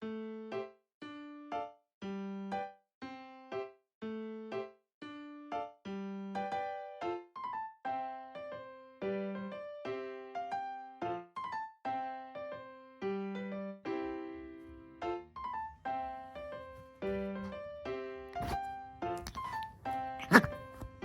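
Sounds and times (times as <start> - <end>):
light piano tune: 3.5 - 19.2.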